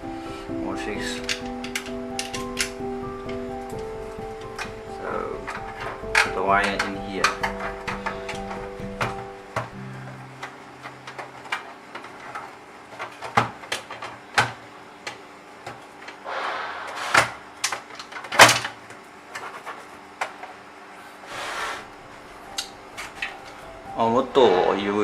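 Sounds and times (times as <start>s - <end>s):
lock parts clicking and knocking: 1.2s - 3.4s, 5.4s - 9.7s
brief scraping: 16.2s - 17.4s.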